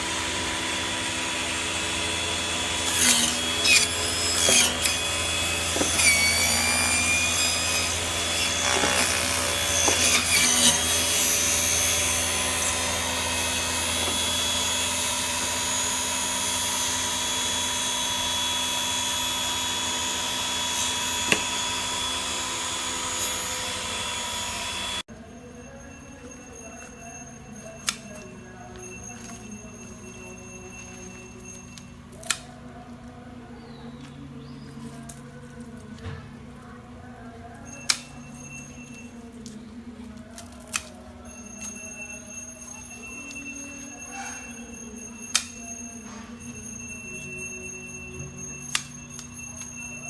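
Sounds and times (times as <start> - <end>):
cutting machine running: 0.0 - 25.1
rasping cutting noises and knocks: 1.4 - 25.0.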